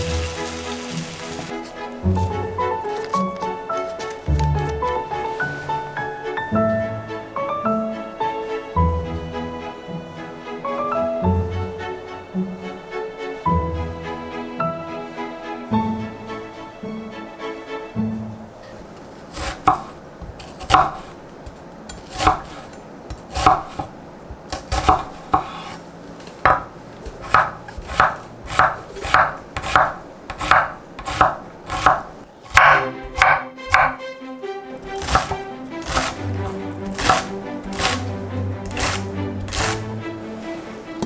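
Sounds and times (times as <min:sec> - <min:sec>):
knife chopping on cutting board: 0:19.3 - 0:21.2, 0:21.9 - 0:25.8, 0:26.4 - 0:34.0, 0:34.8 - 0:40.0.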